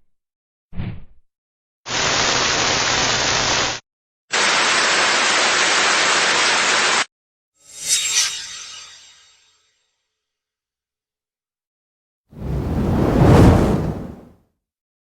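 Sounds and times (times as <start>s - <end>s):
short whoosh: 12.4s - 14.3s.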